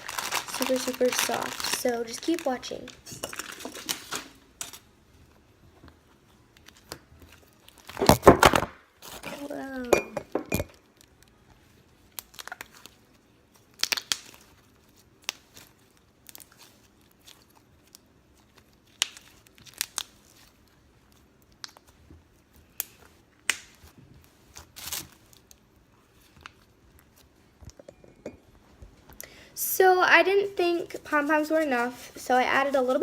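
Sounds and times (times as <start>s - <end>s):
slime crackling and popping: 0.0s - 4.2s, 10.9s - 27.3s.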